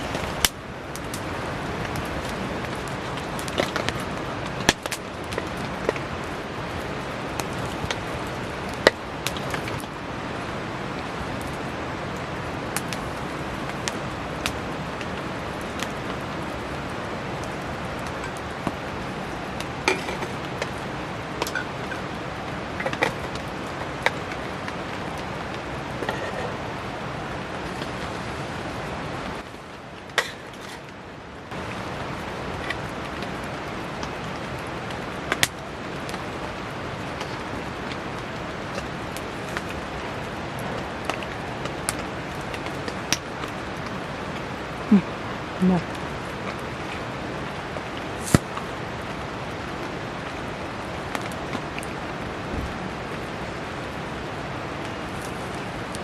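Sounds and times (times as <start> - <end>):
campfire pops and crackles: 0.0 - 56.0
heavy rain hiss: 0.0 - 56.0.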